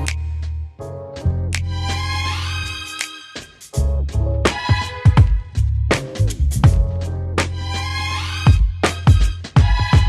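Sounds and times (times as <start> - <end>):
deep bass and held notes: 0.0 - 3.0, 3.7 - 4.6, 5.2 - 10.0
sharp drum hits: 4.5 - 7.1, 8.5 - 10.0.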